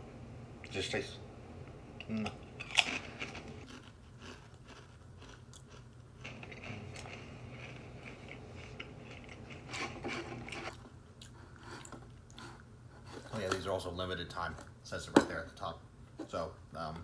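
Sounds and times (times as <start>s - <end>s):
crisps crunching while chewing: 2.6s - 12.5s.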